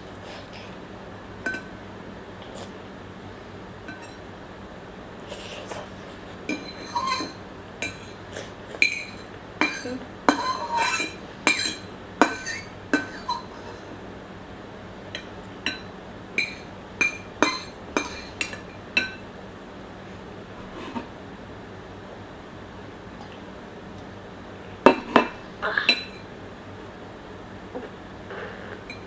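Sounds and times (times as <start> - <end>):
utensils clinking against dish: 1.4 - 1.8, 3.9 - 4.2, 6.5 - 13.9, 15.1 - 19.2, 24.9 - 26.3, 28.8 - 29.0.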